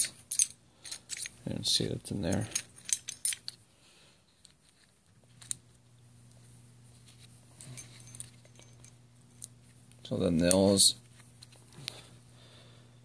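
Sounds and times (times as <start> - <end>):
small metal gears clicking: 0.0 - 1.4
low steady hum: 0.0 - 13.0.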